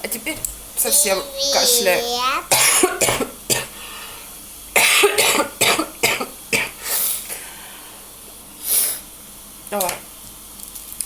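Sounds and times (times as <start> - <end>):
woman coughing: 0.9 - 3.7, 4.8 - 6.8.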